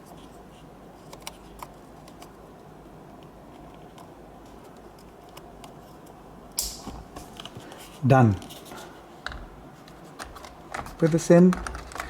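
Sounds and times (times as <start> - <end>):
connector snapping into place: 6.6 - 7.0.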